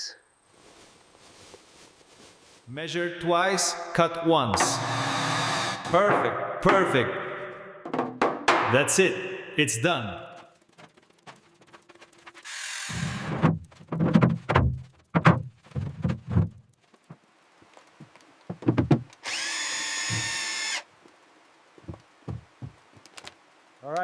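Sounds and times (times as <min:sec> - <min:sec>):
building work knocks and thumps: 0:04.5 - 0:05.1, 0:07.8 - 0:08.8, 0:10.8 - 0:17.2, 0:18.0 - 0:19.2, 0:20.1 - 0:20.4, 0:21.8 - 0:22.8
power drill running: 0:04.7 - 0:05.9, 0:12.4 - 0:13.3, 0:19.2 - 0:20.8.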